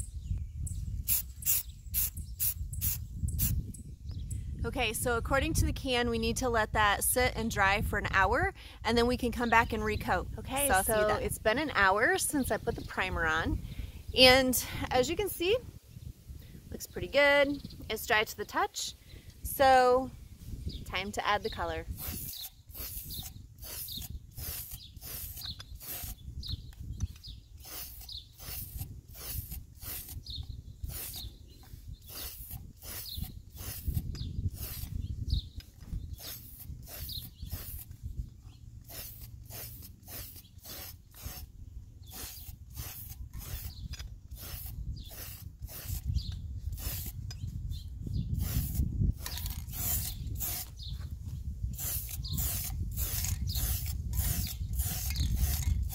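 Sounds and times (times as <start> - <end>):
spray paint can hissing: 1.1 - 3.6, 22.0 - 26.2, 27.6 - 30.3, 30.9 - 31.3, 32.0 - 34.9, 36.1 - 37.9, 38.8 - 46.1, 46.7 - 47.2, 48.4 - 50.7, 51.7 - 55.9.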